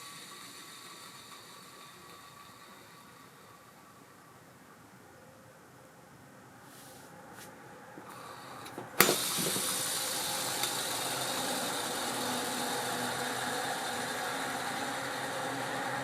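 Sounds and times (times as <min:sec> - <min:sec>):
spinning spool whirring: 0:00.0 - 0:04.4, 0:08.0 - 0:16.0.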